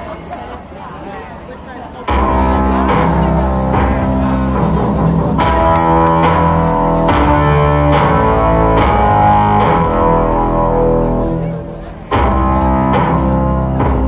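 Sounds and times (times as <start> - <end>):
rock band playing live: 2.1 - 14.0.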